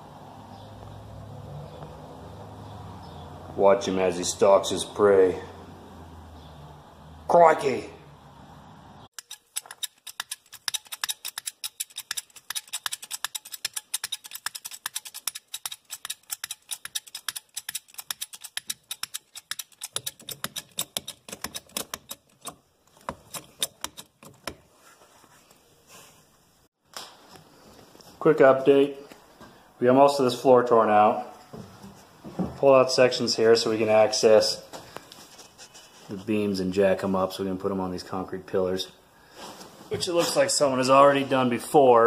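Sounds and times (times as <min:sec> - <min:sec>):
sharp clicks and taps: 0:09.2 - 0:24.6.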